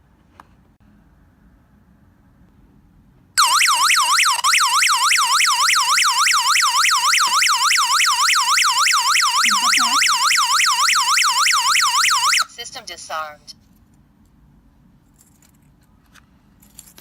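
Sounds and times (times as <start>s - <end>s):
warbling alarm siren: 3.4s - 12.6s.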